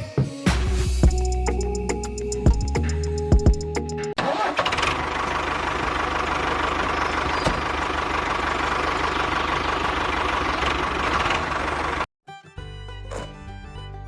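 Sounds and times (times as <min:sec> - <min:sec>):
engine idling: 0:04.4 - 0:12.1.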